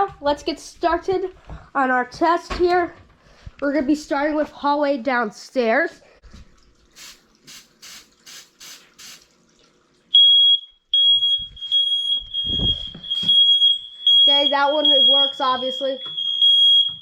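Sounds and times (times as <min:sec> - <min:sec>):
spray can hissing: 0:07.0 - 0:09.3
smoke alarm beeping: 0:10.1 - 0:17.0.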